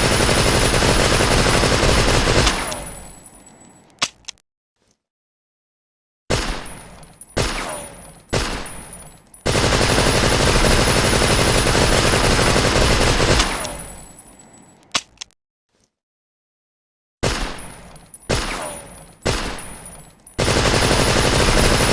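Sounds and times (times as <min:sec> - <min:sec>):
submachine gun firing: 0:00.0 - 0:02.9, 0:09.5 - 0:13.8, 0:18.3 - 0:19.8, 0:20.4 - 0:21.9.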